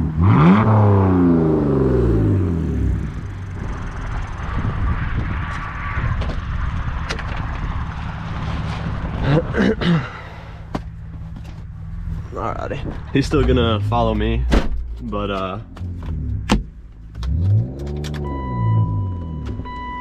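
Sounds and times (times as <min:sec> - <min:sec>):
car engine revving then idling: 0:00.0 - 0:05.8.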